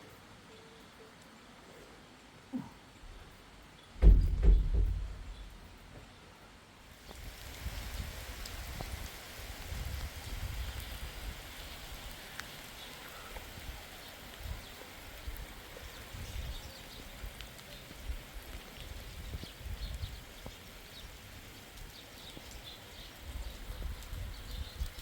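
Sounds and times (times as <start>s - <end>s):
steady rain falling: 0.0s - 25.0s
low uneven rumble: 4.0s - 6.3s.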